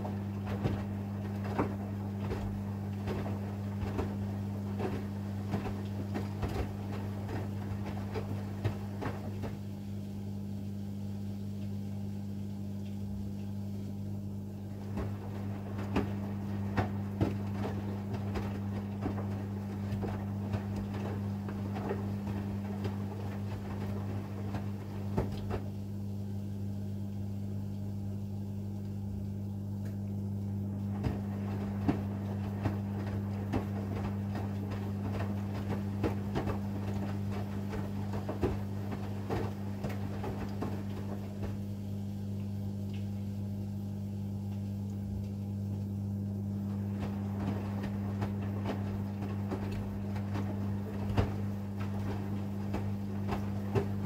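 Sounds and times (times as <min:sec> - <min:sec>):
steady low hum: 0:00.0 - 0:54.0
washing machine tumbling laundry: 0:00.0 - 0:54.0.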